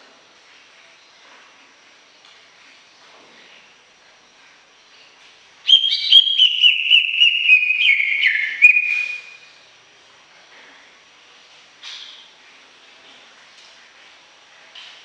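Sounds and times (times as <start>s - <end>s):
faint background hiss: 0.0s - 15.0s
bird singing whistled phrase: 5.7s - 9.4s.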